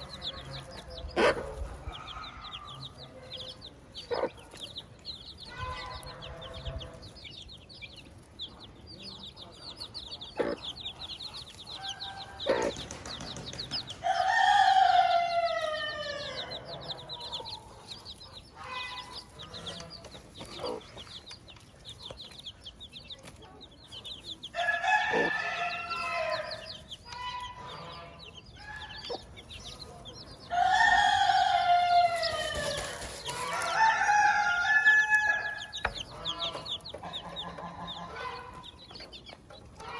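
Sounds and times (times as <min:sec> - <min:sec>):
chicks peeping: 0:00.0 - 0:39.9
hen clucking: 0:00.0 - 0:39.9
rooster crowing: 0:14.0 - 0:17.4, 0:24.6 - 0:26.7, 0:30.5 - 0:35.8.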